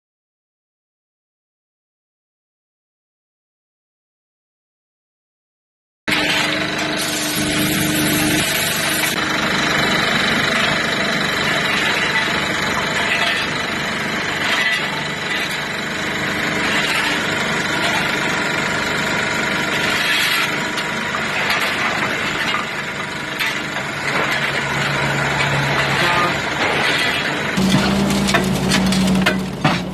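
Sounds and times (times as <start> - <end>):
road machine engine running: 6.1 - 29.9.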